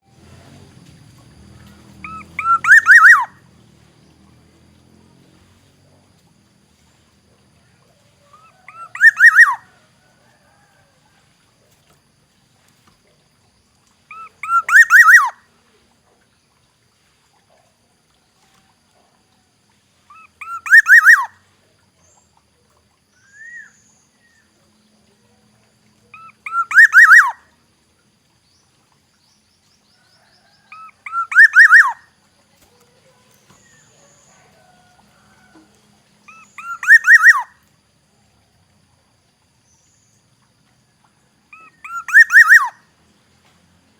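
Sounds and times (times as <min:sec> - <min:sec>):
bird fluty whistled call: 0:02.0 - 0:03.4, 0:08.3 - 0:09.8, 0:14.1 - 0:15.4, 0:20.1 - 0:21.4, 0:23.2 - 0:24.4, 0:26.1 - 0:27.4, 0:30.2 - 0:32.1, 0:36.2 - 0:37.5, 0:41.5 - 0:42.8.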